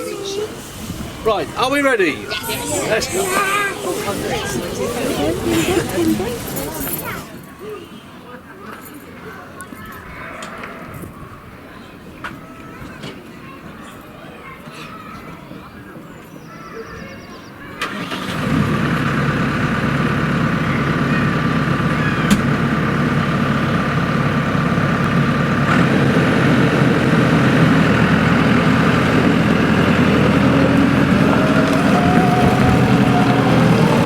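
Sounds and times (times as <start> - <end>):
tractor engine droning: 17.8 - 34.0.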